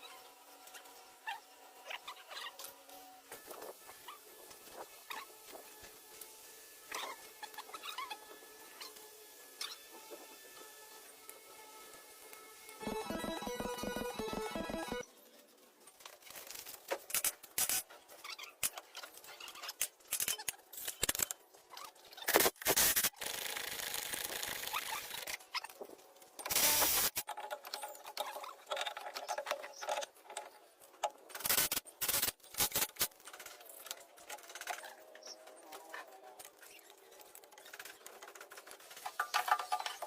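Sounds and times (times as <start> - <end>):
hiss: 26.5 - 27.2.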